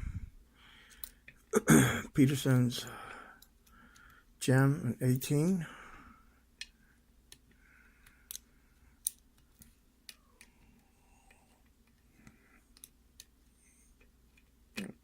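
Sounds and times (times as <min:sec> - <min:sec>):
lock pick metallic clicks: 0:08.0 - 0:09.2.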